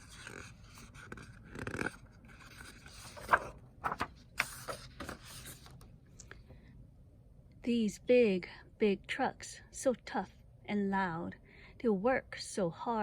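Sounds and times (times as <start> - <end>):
paper page rustling: 0.0 - 5.8.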